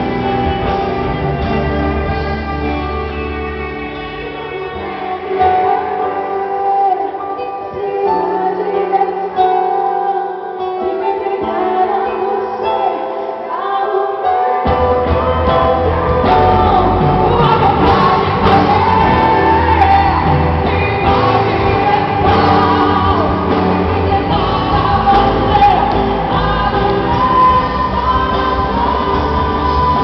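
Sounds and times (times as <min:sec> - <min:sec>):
gospel band music with singing: 0:00.0 - 0:30.0.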